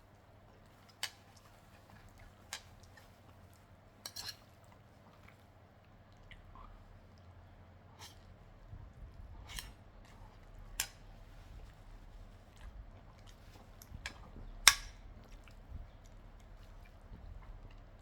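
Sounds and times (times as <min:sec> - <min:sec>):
person chewing: 0:09.6 - 0:18.0.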